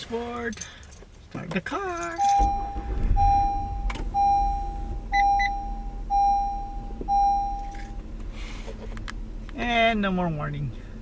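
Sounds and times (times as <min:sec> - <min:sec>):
dashboard warning beeps: 0:02.0 - 0:08.0
short higher beeps: 0:02.2 - 0:07.9
car engine running low: 0:02.2 - 0:11.0.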